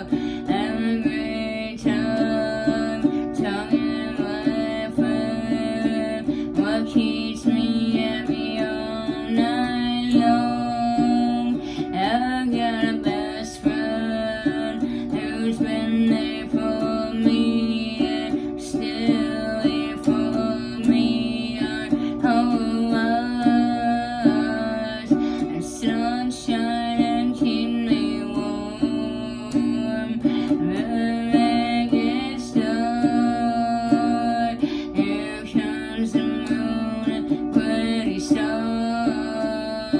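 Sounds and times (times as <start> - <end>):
plucked acoustic guitar music: 0.0 - 39.9.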